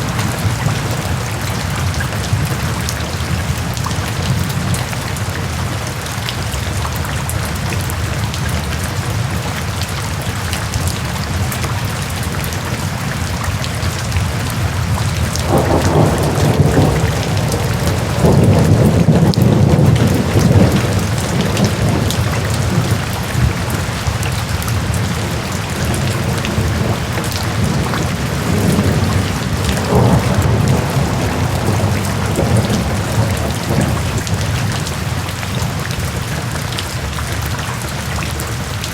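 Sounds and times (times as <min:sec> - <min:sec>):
thunder rumbling: 0:00.0 - 0:05.4, 0:14.1 - 0:36.3
steady rain falling: 0:00.0 - 0:38.9.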